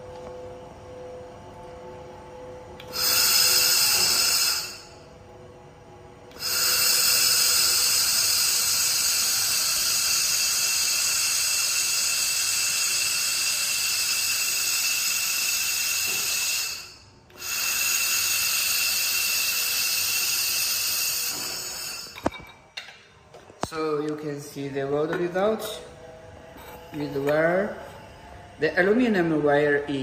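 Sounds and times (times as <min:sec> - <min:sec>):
laser welder hissing with whine: 0:02.8 - 0:05.3, 0:06.1 - 0:22.5.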